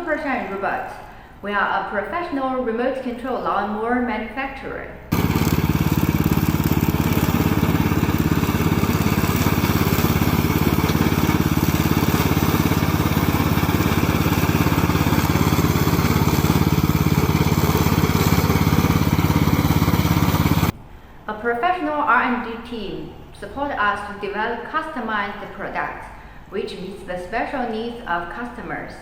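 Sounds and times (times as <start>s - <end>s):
lawn mower engine running: 5.1s - 20.8s.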